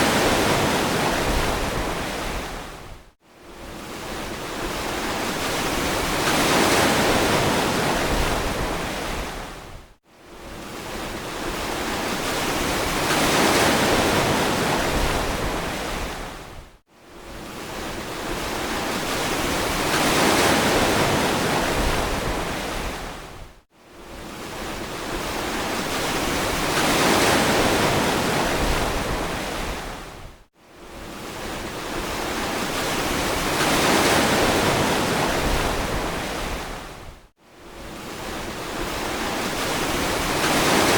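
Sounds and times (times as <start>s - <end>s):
ocean surf washing onto beach: 37.8s - 40.9s.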